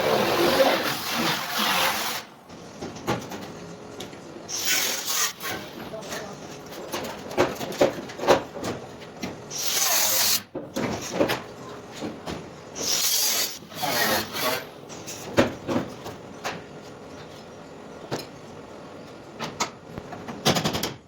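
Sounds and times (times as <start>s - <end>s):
harsh high scraping hiss: 12.8s - 14.7s.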